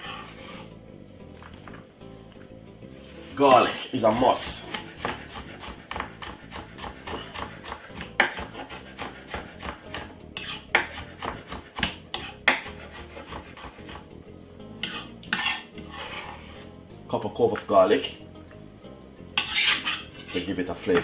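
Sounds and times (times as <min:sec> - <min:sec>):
scraping in a bowl: 0:00.0 - 0:00.8, 0:10.4 - 0:11.0, 0:14.8 - 0:16.7, 0:19.4 - 0:21.0.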